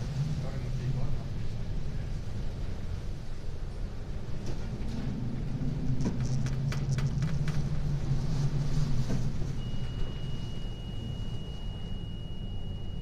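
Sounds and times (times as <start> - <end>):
ship engine droning: 0.0 - 13.0
steady high-pitched tone: 9.5 - 13.0.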